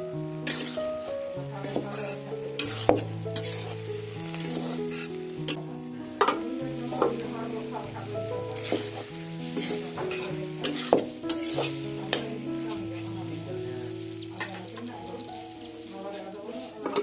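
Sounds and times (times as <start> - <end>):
food sizzling: 0.0 - 17.0
instrumental music slow melody: 0.0 - 17.0
spatula scraping frying pan: 0.4 - 5.6, 6.3 - 13.2.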